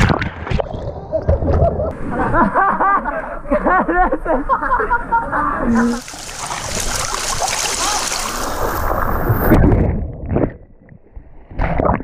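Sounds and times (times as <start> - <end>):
mountain stream rushing: 5.8 - 9.5.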